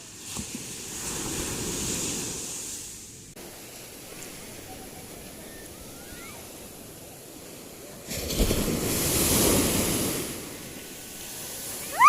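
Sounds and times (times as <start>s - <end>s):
ocean surf washing on shore: 0.0s - 12.0s
wave breaking: 0.2s - 12.0s.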